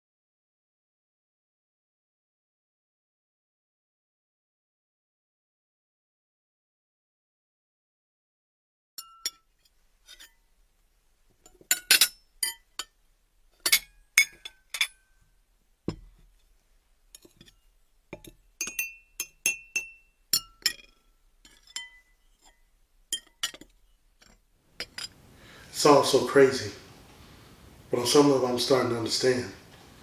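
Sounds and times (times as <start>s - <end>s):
glassware clinking: 9.0s - 10.4s, 11.4s - 13.0s, 13.6s - 15.3s, 17.1s - 25.2s.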